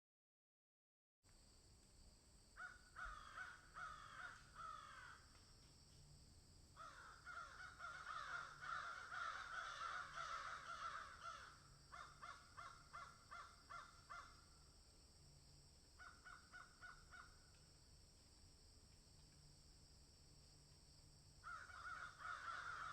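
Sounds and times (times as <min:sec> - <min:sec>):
faint steady hiss: 0:01.3 - 0:09.7, 0:11.4 - 0:22.9
crows cawing: 0:02.6 - 0:05.3, 0:06.8 - 0:14.4, 0:16.0 - 0:17.5, 0:21.4 - 0:22.9.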